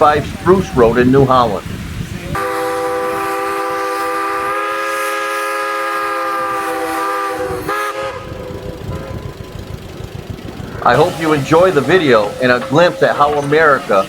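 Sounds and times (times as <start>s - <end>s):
steam whistle blowing: 2.3s - 9.6s, 11.0s - 14.0s.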